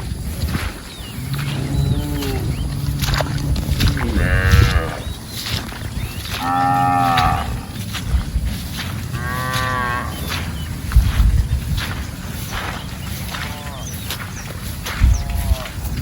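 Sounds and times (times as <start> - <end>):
cattle mooing: 1.1 - 5.4, 6.3 - 7.8, 9.1 - 10.4.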